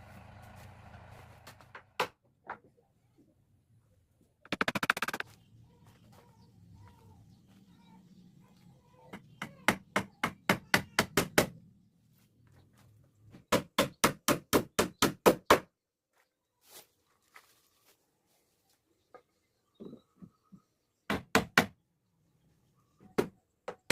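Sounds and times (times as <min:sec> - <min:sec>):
hammering on wood: 0:09.1 - 0:11.6, 0:13.5 - 0:15.7, 0:21.1 - 0:21.8.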